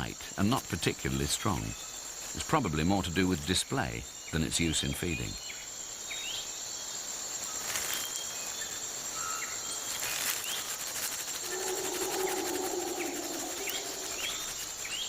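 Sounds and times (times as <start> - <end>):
high-pitched insect drone: 9.1 - 15.0
low-pitched animal call: 11.4 - 14.5
bird chirps: 11.4 - 15.0.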